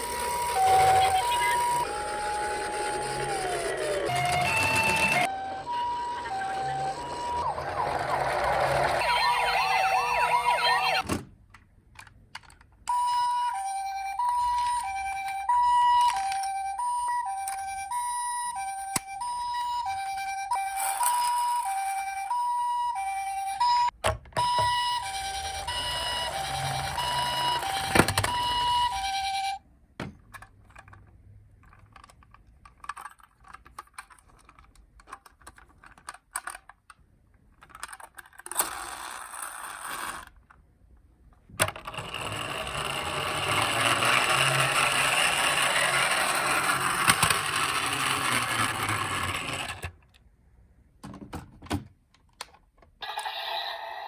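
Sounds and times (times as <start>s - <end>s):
ambulance two-tone siren: 0.0s - 11.0s, 12.9s - 29.6s.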